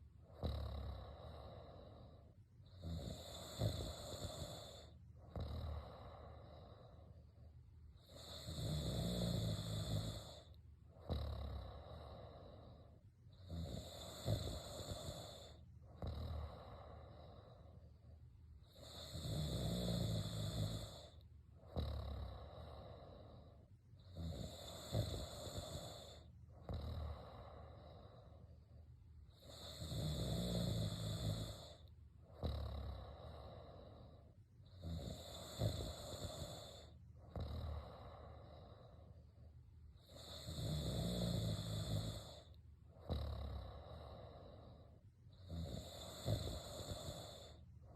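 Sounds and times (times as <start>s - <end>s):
person snoring: 0.3s - 7.2s, 8.0s - 17.8s, 18.6s - 28.5s, 29.3s - 39.2s, 40.0s - 47.6s.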